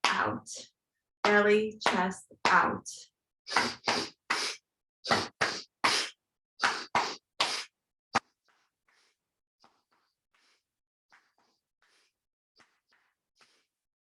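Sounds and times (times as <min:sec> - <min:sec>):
sniffing inhales: 0:03.5 - 0:07.8, 0:13.4 - 0:13.8.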